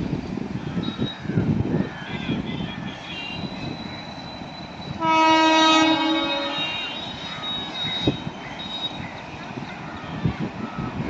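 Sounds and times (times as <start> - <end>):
passing train noise: 0.0 - 11.0
locomotive horn blast: 5.0 - 7.0.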